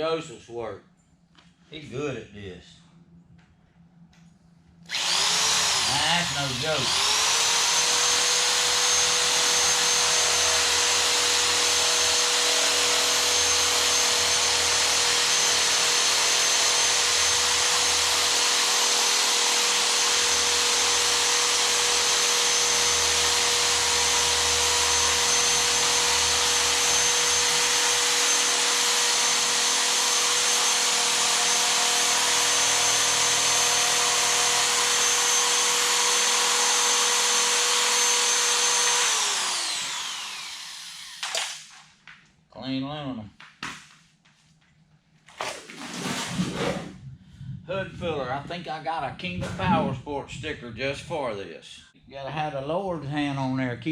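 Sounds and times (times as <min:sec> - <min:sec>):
power tool whining: 0:04.9 - 0:41.7.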